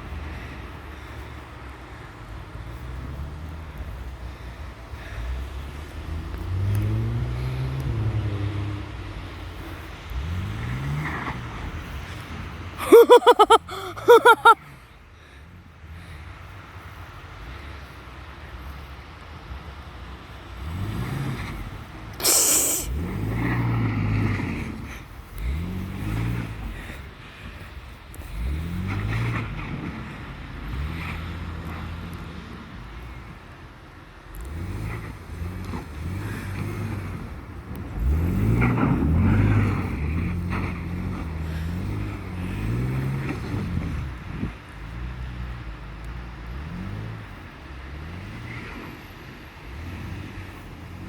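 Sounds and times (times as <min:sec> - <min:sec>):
short sharp hiss: 0:22.2 - 0:22.9.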